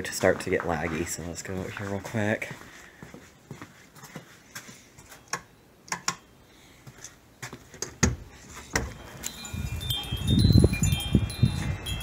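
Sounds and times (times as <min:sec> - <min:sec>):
wind chimes ringing: 0:08.6 - 0:12.0
gusting wind on microphone: 0:09.3 - 0:12.0.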